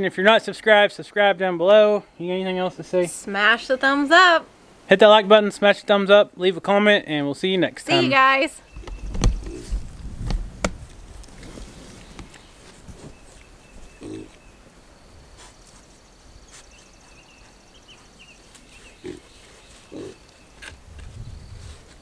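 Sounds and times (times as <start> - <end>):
pigs grunting: 13.8 - 14.5, 18.8 - 20.3.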